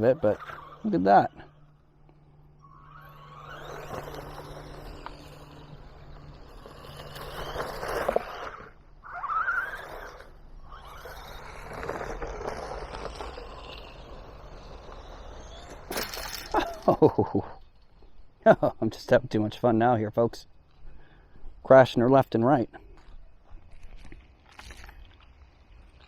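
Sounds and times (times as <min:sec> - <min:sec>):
rc car electric motor whining: 0:00.0 - 0:16.9.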